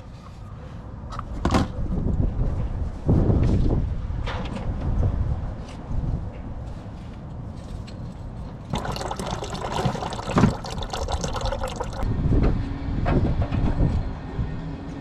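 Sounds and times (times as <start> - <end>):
liquid splashing: 8.7 - 12.0.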